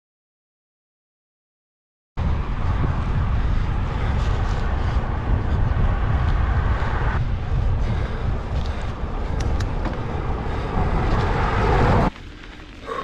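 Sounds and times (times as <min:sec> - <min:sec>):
wind buffeting microphone: 0:02.2 - 0:12.4.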